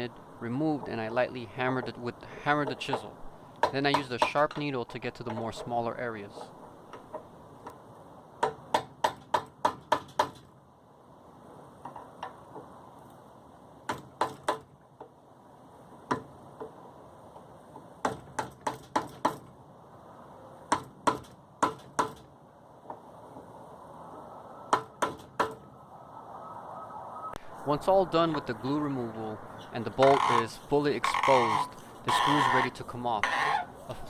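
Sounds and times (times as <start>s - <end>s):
hammer tapping on a chisel: 2.6s - 5.7s.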